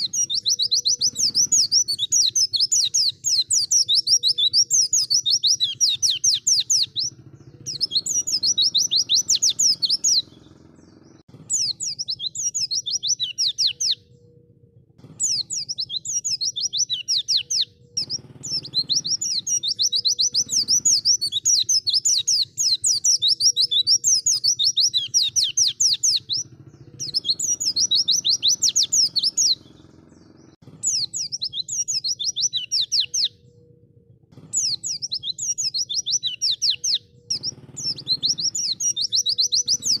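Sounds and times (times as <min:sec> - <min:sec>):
bird singing fast high trills: 0:00.0 - 0:40.0.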